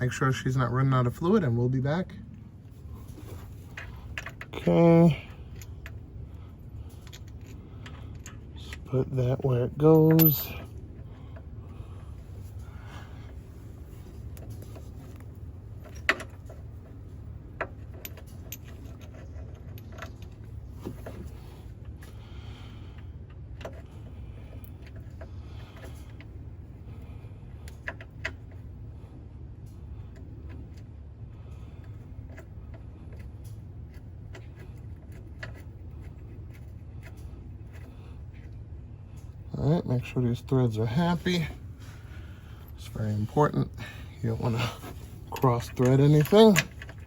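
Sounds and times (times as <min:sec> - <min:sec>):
low steady hum: 0:00.0 - 0:47.0
metal tools clinking: 0:06.9 - 0:10.8, 0:42.7 - 0:47.0.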